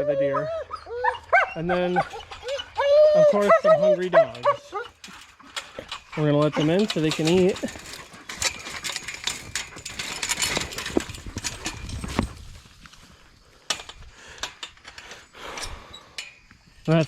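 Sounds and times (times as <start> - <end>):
dogs clattering and scuffling: 3.4 - 12.6.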